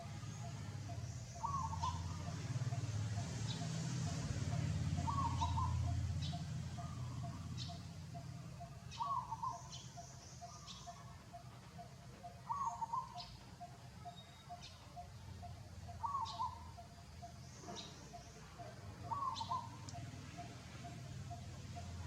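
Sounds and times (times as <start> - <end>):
bird two-part call: 0.3 - 2.4, 3.5 - 22.0.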